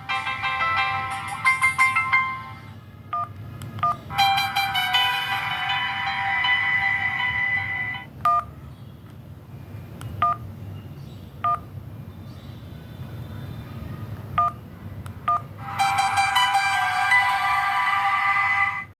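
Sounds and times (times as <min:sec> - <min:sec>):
phone ringtone melody: 0:00.0 - 0:03.3, 0:04.1 - 0:08.4, 0:15.3 - 0:18.9
dual-tone keypad beeps: 0:03.2 - 0:05.4, 0:14.4 - 0:14.6.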